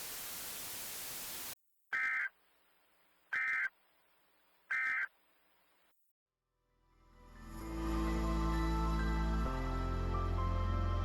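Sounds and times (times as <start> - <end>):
static hiss: 0.0 - 2.1.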